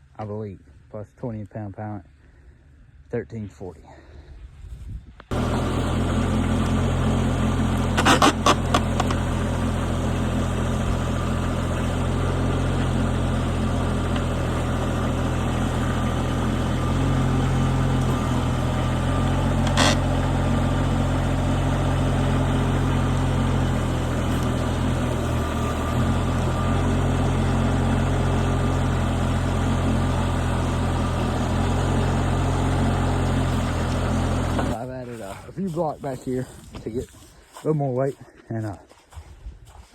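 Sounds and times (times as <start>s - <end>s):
diesel engine running: 5.3s - 37.1s.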